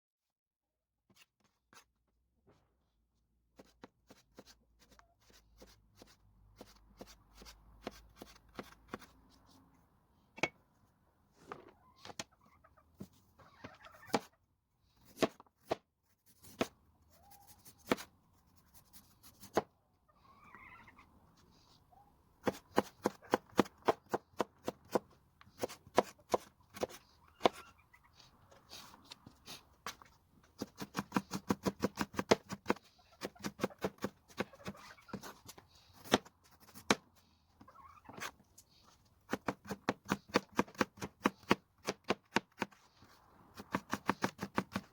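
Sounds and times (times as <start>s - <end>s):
knife chopping on cutting board: 17.7s - 18.1s, 22.4s - 27.6s.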